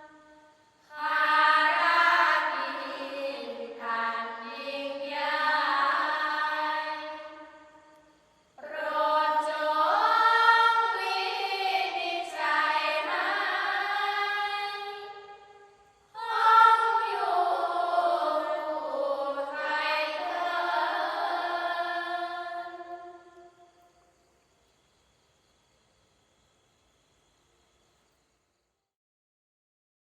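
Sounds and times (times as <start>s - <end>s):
group chanting devotional chant: 0.0s - 23.8s.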